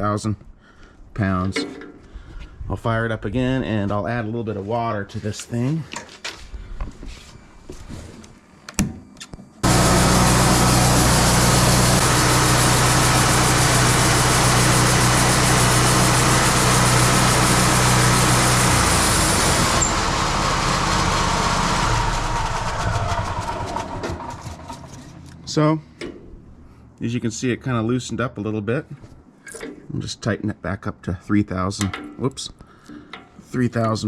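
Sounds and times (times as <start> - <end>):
sawmill engine running: 9.6 - 25.4.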